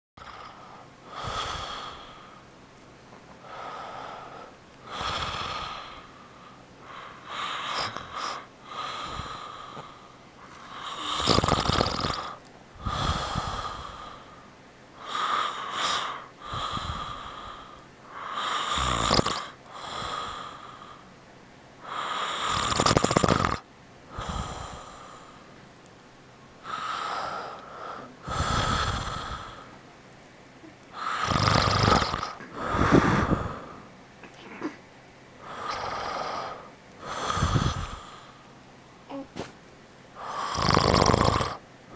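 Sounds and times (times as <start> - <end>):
man snoring: 0.2 - 2.2, 4.9 - 6.1, 6.9 - 9.9, 10.6 - 14.2, 15.0 - 20.6, 21.9 - 23.6, 26.7 - 29.7, 31.0 - 33.7, 35.4 - 38.3, 40.2 - 41.6.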